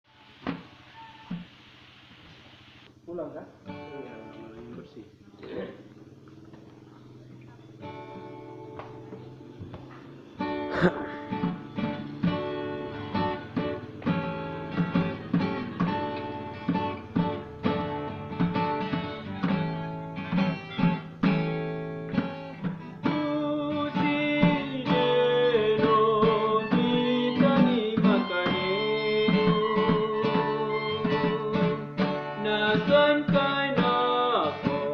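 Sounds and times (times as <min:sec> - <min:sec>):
guitar strumming: 0:03.6 - 0:34.9
person singing: 0:23.0 - 0:34.9.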